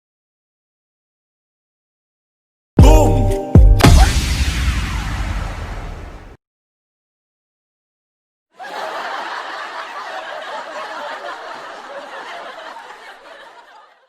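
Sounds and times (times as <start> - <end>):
canned audience laughter: 8.6 - 14.0.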